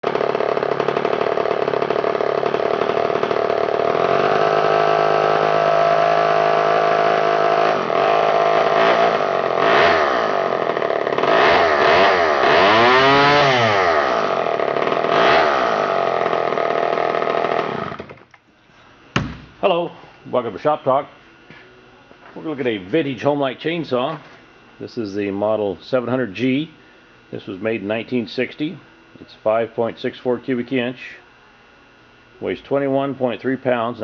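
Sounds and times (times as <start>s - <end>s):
chainsaw engine idling and revving: 0.0s - 18.1s.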